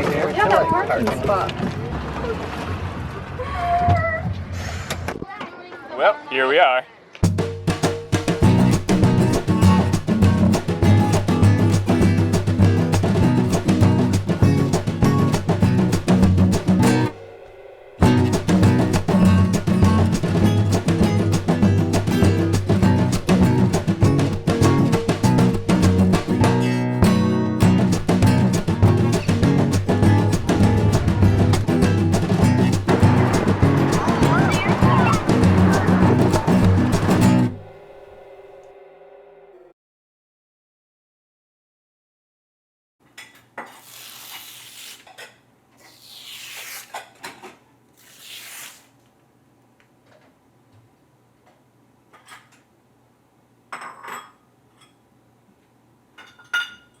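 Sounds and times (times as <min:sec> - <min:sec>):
upbeat strummed guitar music: 0:07.3 - 0:17.2, 0:18.0 - 0:37.7.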